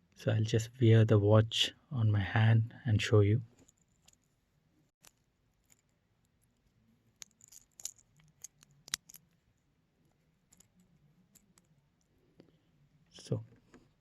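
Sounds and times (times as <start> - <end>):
watch bracelet clicking: 7.2 - 9.2.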